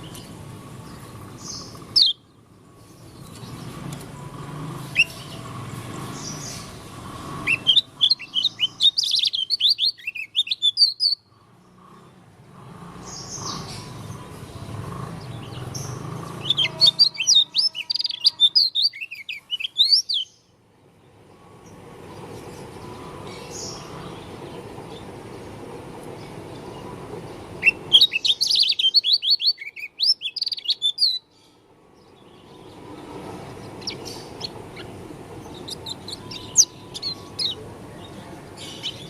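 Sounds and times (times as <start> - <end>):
bird twittering: 1.3 - 2.3, 4.9 - 5.4, 7.4 - 11.3, 15.5 - 20.4, 27.6 - 31.3, 33.6 - 37.7.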